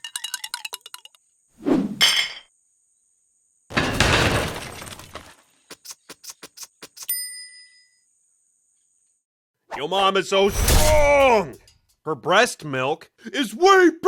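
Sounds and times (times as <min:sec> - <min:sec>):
glass shattering: 0:03.7 - 0:05.3, 0:10.5 - 0:11.7.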